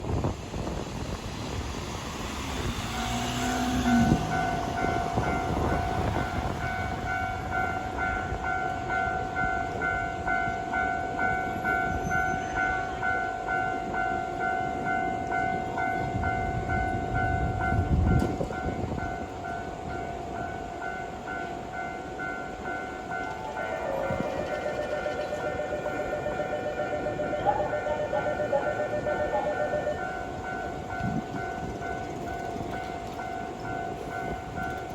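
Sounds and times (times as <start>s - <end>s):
level-crossing warning bell: 0.0s - 34.9s
train wheels clacking over rails: 23.0s - 34.9s.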